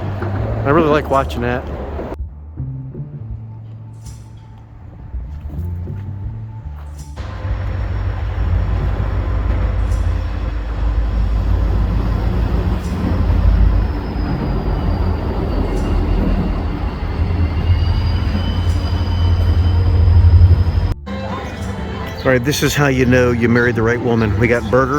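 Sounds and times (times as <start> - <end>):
train rumbling past: 0.0 - 2.2, 7.2 - 24.9
high-pitched squeal: 7.2 - 24.8.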